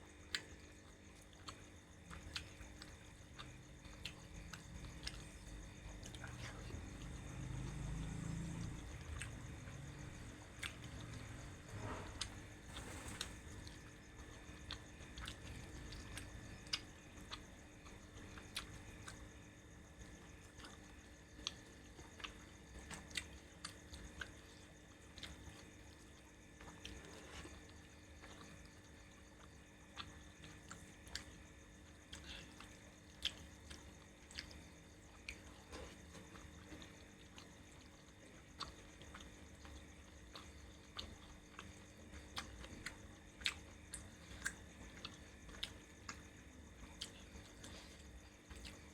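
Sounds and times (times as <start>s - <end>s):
person chewing: 1.2s - 7.9s, 10.6s - 11.1s, 14.7s - 19.2s, 32.1s - 38.0s, 42.4s - 45.8s, 46.9s - 48.9s.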